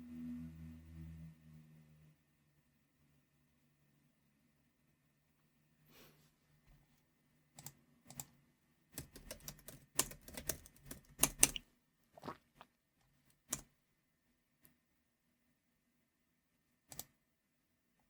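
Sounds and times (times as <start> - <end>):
typing on computer keyboard: 7.6 - 11.6, 16.9 - 17.2.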